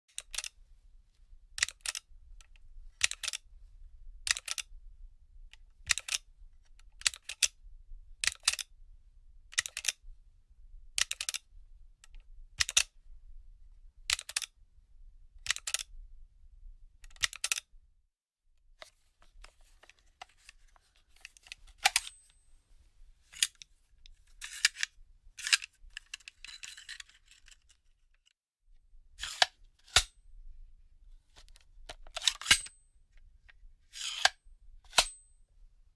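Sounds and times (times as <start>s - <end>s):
pages rustling and crinkling: 18.8s - 22.0s.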